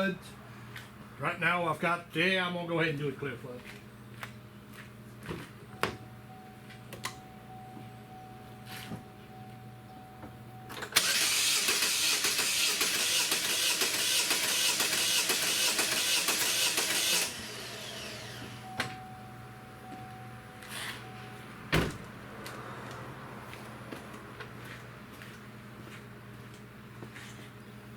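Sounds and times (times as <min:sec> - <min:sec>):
engine starter cranking: 0:10.7 - 0:18.7.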